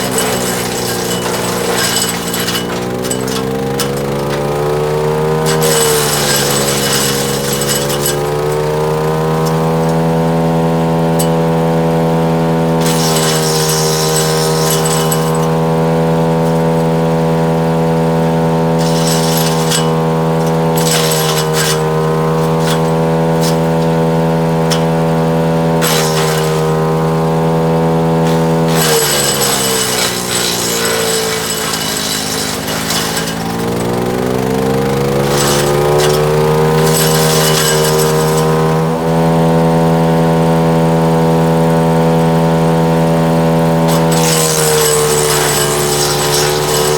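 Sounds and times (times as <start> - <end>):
wood chipping crackle: 0.0 - 10.0, 28.0 - 38.8, 43.9 - 46.9
wood chipper engine running: 0.0 - 46.9.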